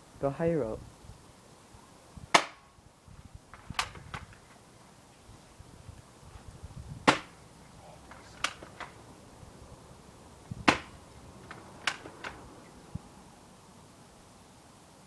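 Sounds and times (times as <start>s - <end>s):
bb gun cracks: 2.4s - 2.6s, 7.1s - 7.4s, 8.1s - 9.0s, 10.7s - 12.4s.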